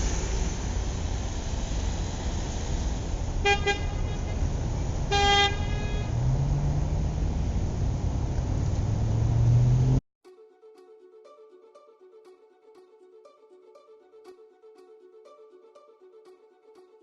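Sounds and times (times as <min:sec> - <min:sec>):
steady low rumble: 0:00.0 - 0:10.0
horn toots: 0:03.2 - 0:07.5.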